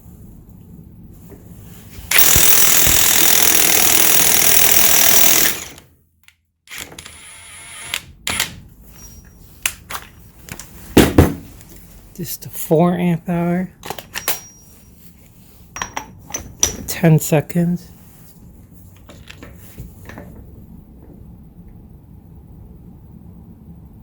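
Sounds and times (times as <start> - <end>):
impact wrench hammering: 2.1 - 5.8.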